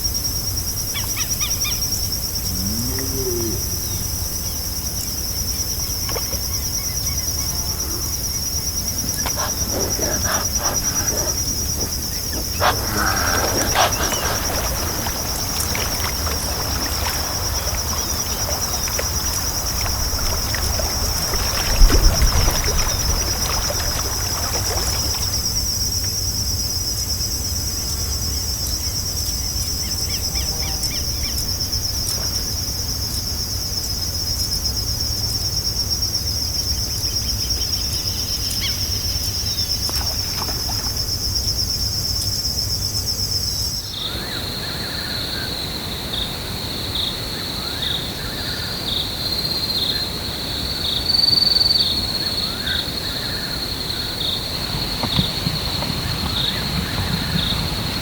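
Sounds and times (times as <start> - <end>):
low pulsing insect trill: 0.0 - 58.0
insects buzzing high-pitched: 6.3 - 25.6.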